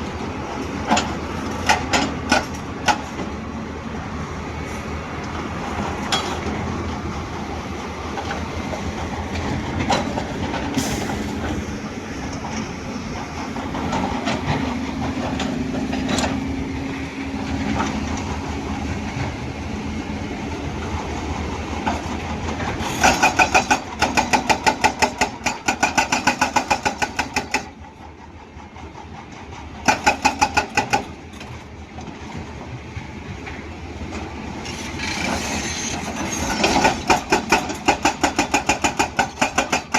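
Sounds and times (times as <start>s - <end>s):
metal clanks: 9.9s - 12.7s
hydraulic hammer pounding rock: 22.7s - 27.7s, 29.8s - 31.2s, 34.8s - 39.9s.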